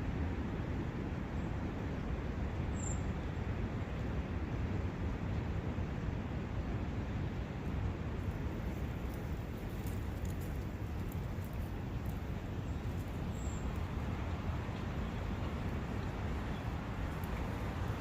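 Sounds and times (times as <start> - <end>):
brook running: 8.2 - 18.0
faint high ticks: 8.3 - 12.3, 17.1 - 17.5.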